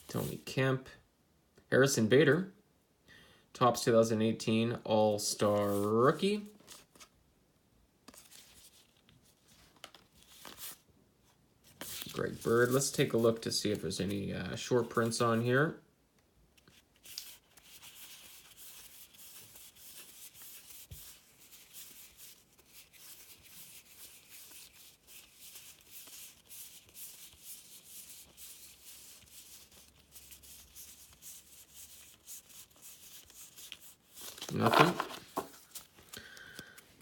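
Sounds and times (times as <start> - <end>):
cards rubbing and ticking: 17.0 - 36.0.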